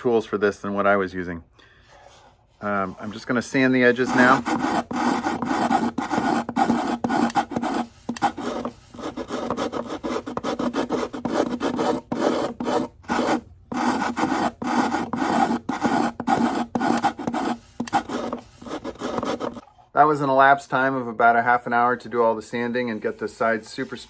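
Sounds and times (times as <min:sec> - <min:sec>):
sandpaper rubbing on wood: 0:02.6 - 0:19.6, 0:22.6 - 0:24.0.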